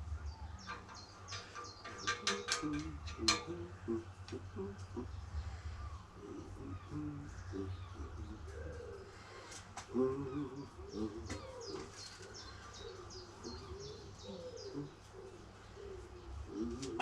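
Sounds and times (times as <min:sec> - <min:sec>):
small bird singing: 0:00.0 - 0:17.0
sharp clicks and knocks: 0:00.6 - 0:03.7.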